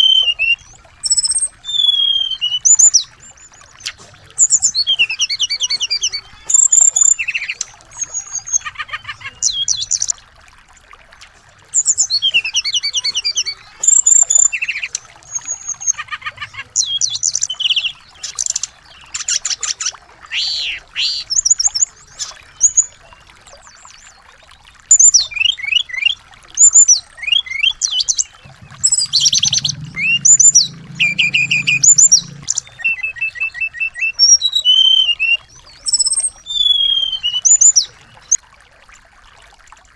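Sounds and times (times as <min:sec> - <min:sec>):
songbirds chirping and trilling: 0:11.7 - 0:38.4.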